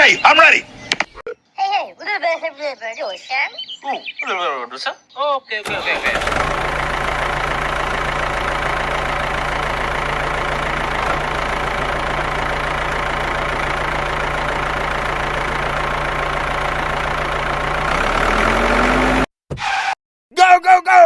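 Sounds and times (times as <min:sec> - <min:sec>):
small engine idling: 0:05.6 - 0:19.2.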